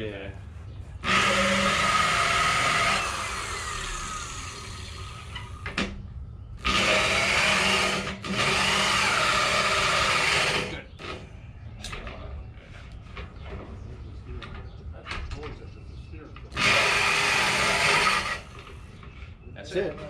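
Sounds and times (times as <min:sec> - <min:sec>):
electric grinder whine: 0:01.0 - 0:05.7, 0:06.6 - 0:10.8, 0:16.6 - 0:18.7.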